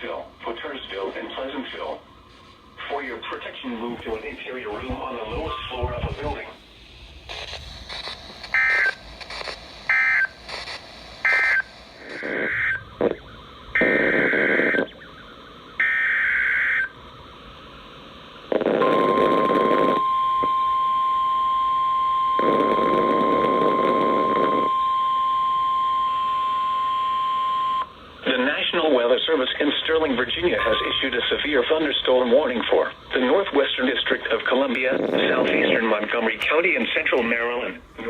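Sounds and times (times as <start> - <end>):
static: 0.0 - 20.6, 22.4 - 24.8, 27.6 - 38.0
harsh buzzing data chirps: 7.3 - 34.6
steady attention tone: 7.3 - 36.0.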